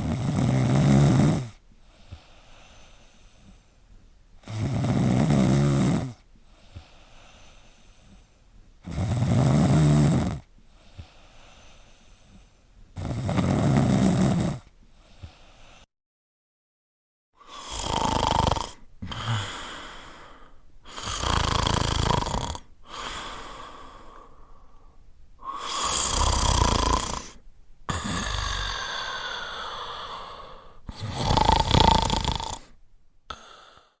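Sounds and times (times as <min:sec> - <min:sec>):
loud snoring: 0:00.0 - 0:01.6, 0:04.4 - 0:06.2, 0:08.8 - 0:11.2, 0:13.0 - 0:14.7, 0:17.4 - 0:24.2, 0:25.4 - 0:33.9
breathing out: 0:27.9 - 0:31.4, 0:33.3 - 0:34.0.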